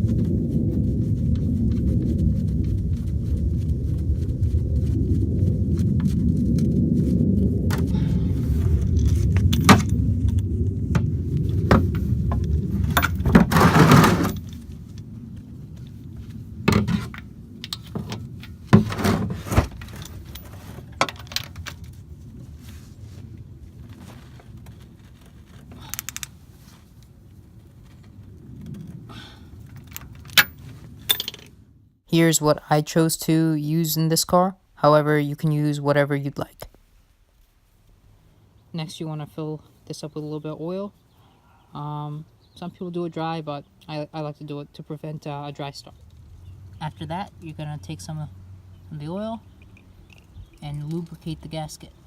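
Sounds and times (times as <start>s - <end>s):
low rumble: 0.0s - 35.1s, 41.6s - 52.0s
tools clinking and knocking: 12.9s - 14.5s, 29.8s - 31.5s, 49.6s - 51.0s.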